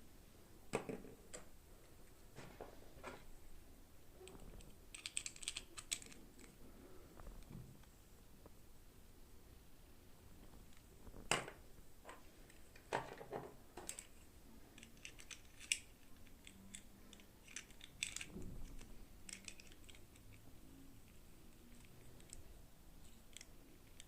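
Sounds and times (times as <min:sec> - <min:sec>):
toy packaging clicks and rustles: 0:04.2 - 0:06.6, 0:13.8 - 0:20.4.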